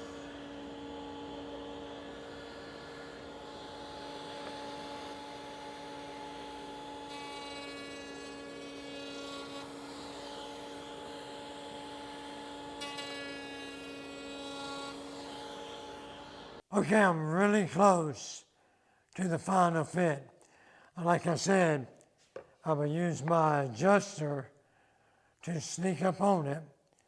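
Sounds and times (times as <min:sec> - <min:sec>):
router cutting wood: 0:00.0 - 0:16.6.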